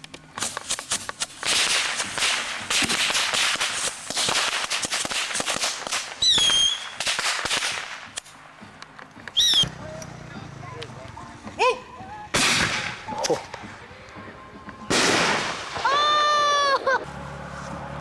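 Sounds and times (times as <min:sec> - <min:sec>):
firework hissing and crackling: 0:00.3 - 0:08.4
firework whistle: 0:06.2 - 0:07.1, 0:09.4 - 0:09.7.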